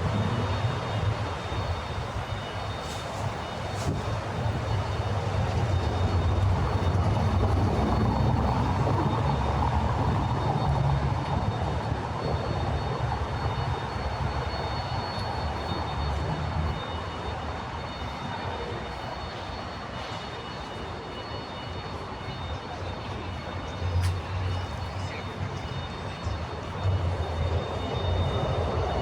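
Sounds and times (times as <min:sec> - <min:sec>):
low engine rumble: 0:00.0 - 0:18.0.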